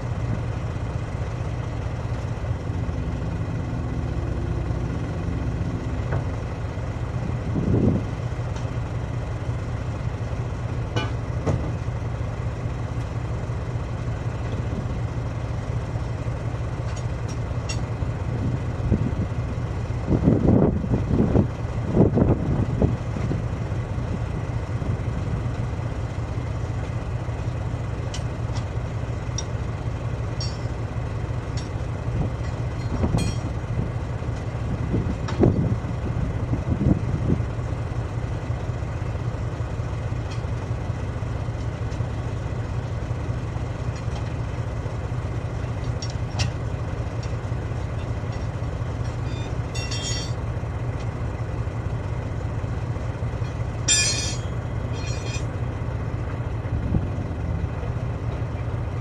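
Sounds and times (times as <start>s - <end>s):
heavy diesel engine running: 0.0s - 59.0s
metal clanks: 10.9s - 11.8s, 16.8s - 18.0s, 30.3s - 33.7s, 45.6s - 51.1s, 53.4s - 55.6s.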